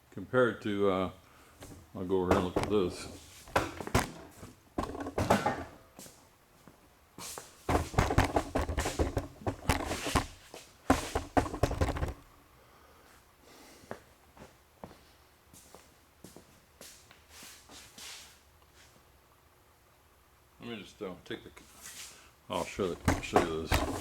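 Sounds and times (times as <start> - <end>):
handling knocks and thumps: 1.6 - 6.1, 7.6 - 12.2, 22.8 - 24.0
rustling handling noises: 1.6 - 12.2, 21.6 - 24.0.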